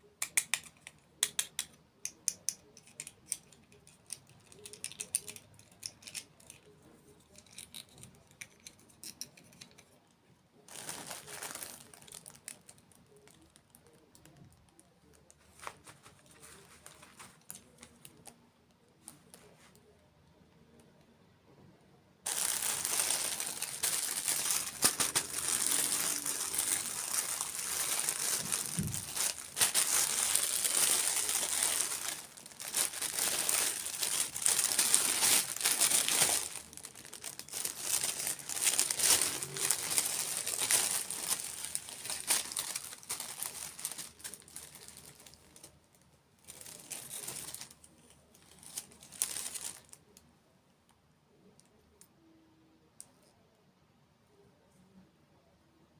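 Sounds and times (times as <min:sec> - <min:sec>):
packaging crinkling: 0:02.9 - 0:06.7, 0:10.7 - 0:18.4, 0:22.3 - 0:45.7, 0:46.4 - 0:50.0.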